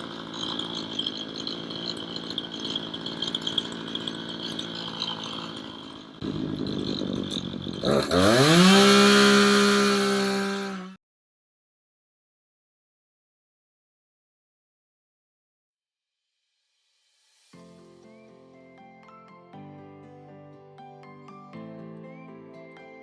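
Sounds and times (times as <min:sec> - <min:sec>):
chainsaw engine revving: 0:00.0 - 0:11.0.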